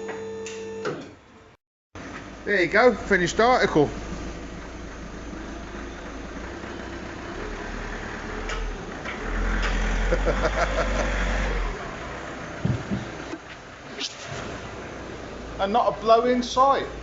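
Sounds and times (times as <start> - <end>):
diesel car engine idling: 2.2 - 9.4.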